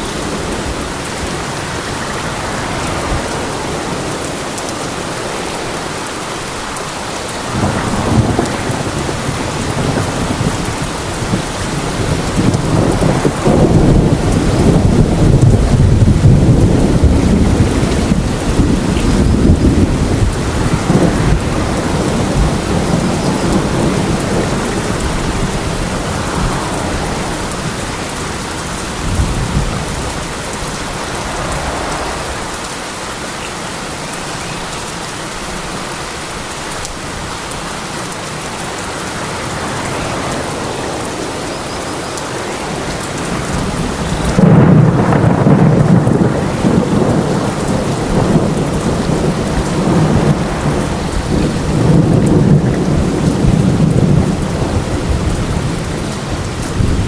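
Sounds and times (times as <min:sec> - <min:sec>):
steady rain: 0:00.0 - 0:57.0
thunder rumbling: 0:07.0 - 0:34.0, 0:38.6 - 0:57.0.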